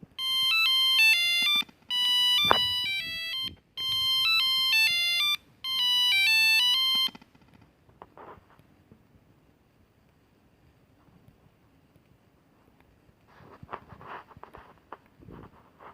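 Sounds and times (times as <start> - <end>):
monophonic phone ringtone: 0.2 - 7.2
faint rustle: 7.2 - 15.9.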